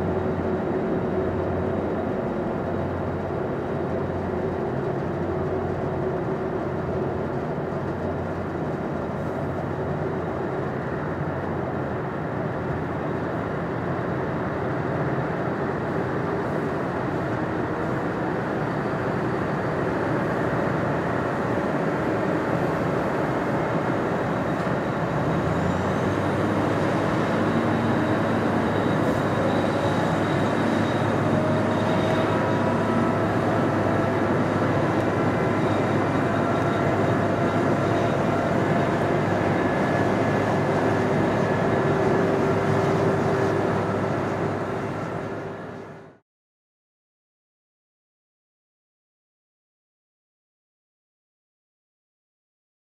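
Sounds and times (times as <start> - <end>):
jet engines whining: 11.7 - 46.0.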